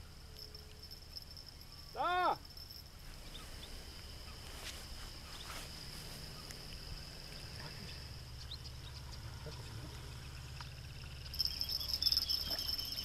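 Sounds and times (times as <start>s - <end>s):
crickets trilling: 0.0s - 13.0s
low steady hum: 0.0s - 13.0s
faint ticks: 6.4s - 7.5s, 10.5s - 11.6s.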